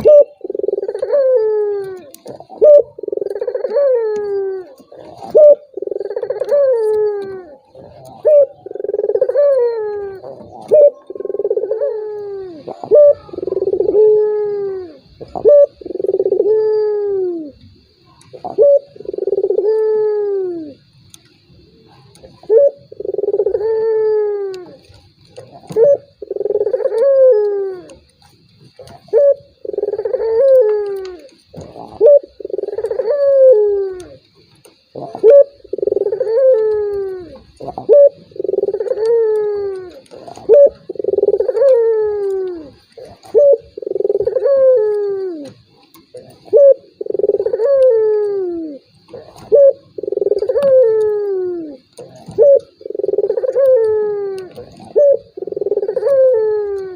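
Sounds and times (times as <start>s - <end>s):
doves cooing: 0.0s - 56.9s.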